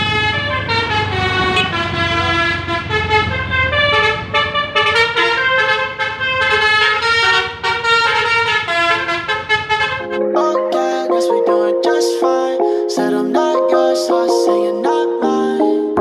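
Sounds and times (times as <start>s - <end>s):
bus engine running: 0.0s - 10.1s
musical bus air horn: 0.0s - 10.2s.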